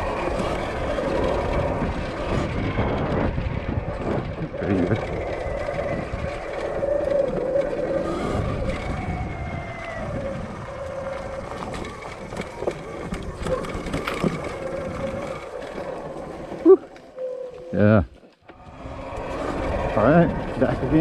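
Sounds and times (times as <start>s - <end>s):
electric motor whine: 0.0s - 21.0s
wind and tyre noise: 0.0s - 21.0s.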